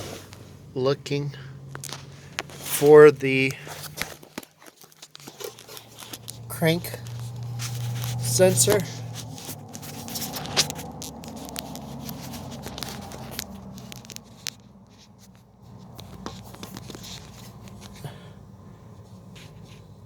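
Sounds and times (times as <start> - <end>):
light clicks and scrapes: 1.7 - 18.2, 18.9 - 20.0.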